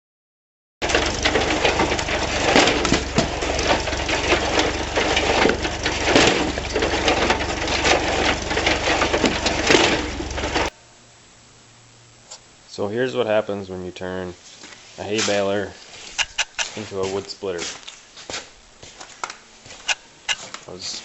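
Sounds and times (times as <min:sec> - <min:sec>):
wood splitter mechanical clatter: 0:00.8 - 0:10.7, 0:16.1 - 0:16.8
low steady hum: 0:00.8 - 0:20.9.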